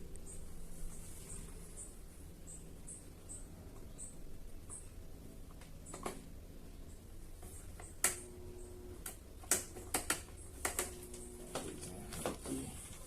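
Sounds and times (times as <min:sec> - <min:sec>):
faint steady hum: 0:00.0 - 0:13.0
fan parts clicking and knocking: 0:09.0 - 0:13.0.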